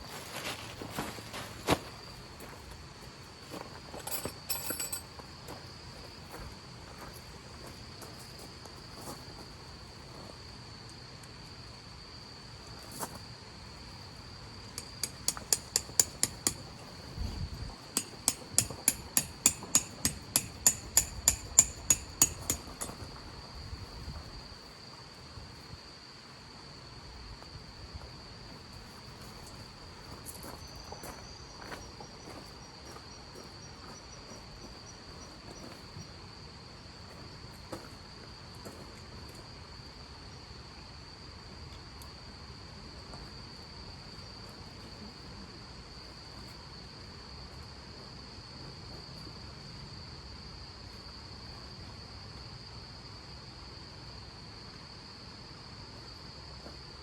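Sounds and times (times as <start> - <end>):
crickets trilling: 0.0 - 57.0
hammer striking metal tent pegs: 14.8 - 17.0, 18.0 - 23.0.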